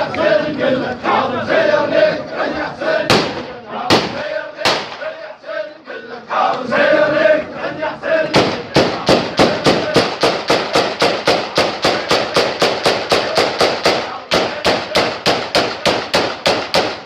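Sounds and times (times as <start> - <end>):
crowd noise: 0.0 - 17.0
fast sharp cracks: 3.1 - 5.1, 8.4 - 17.0.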